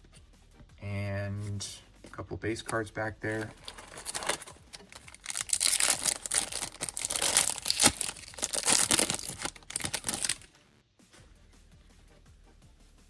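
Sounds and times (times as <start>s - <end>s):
plastic wrapper crinkling and tearing: 3.2s - 10.5s.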